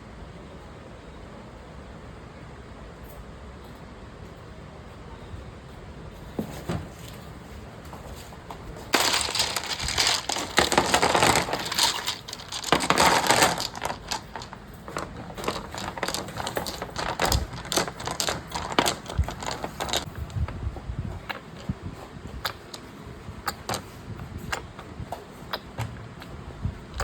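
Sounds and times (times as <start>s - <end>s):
small hard items clattering: 8.6s - 24.8s.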